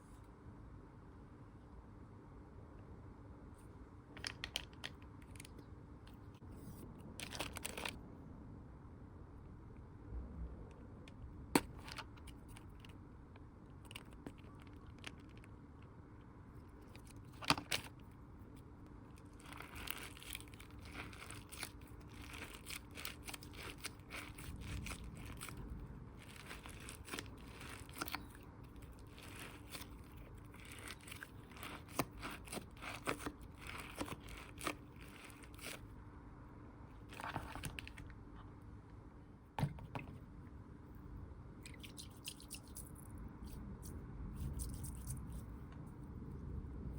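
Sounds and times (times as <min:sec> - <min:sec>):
squishy toys crinkling and crackling: 0:04.2 - 0:06.3, 0:07.0 - 0:08.0, 0:13.7 - 0:15.9, 0:16.6 - 0:35.9, 0:37.0 - 0:38.4.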